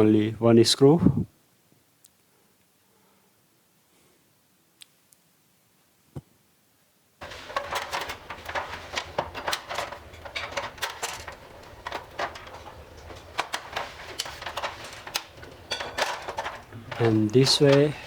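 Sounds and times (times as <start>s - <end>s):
metal parts clattering: 7.2s - 18.0s.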